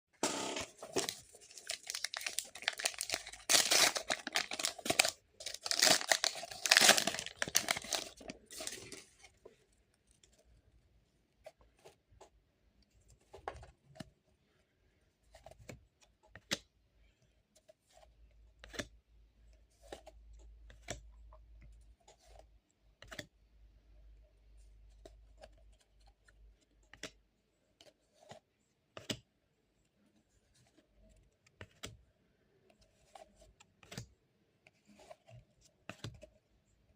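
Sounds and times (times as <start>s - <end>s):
foil wrapper crinkling: 0.6s - 9.2s.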